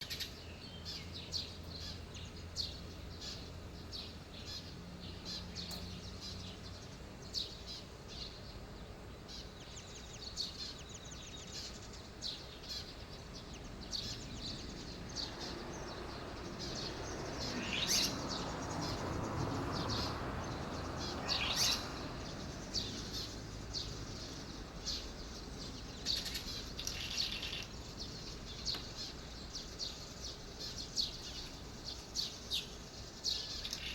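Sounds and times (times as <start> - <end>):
swallow chirping: 22.7 - 33.9.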